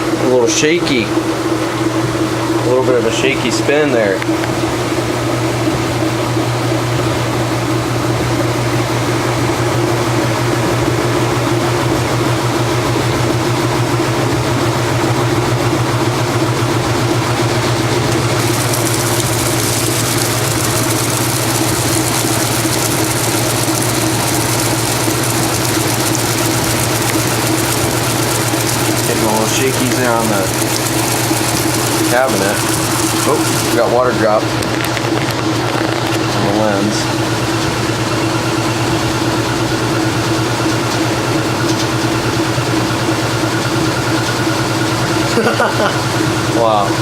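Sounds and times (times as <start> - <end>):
washing machine motor humming: 0.0 - 47.0.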